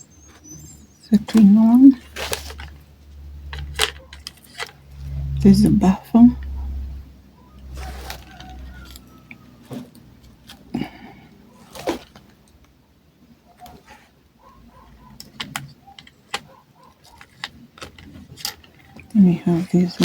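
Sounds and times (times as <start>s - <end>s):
metal drill bits clicking: 3.5s - 4.8s, 15.0s - 20.0s.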